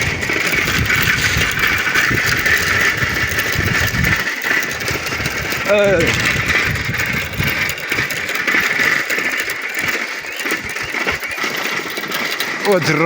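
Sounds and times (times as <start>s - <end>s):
wind noise on microphone: 0.0s - 8.3s
bicycle rattling and clicking: 0.0s - 13.0s.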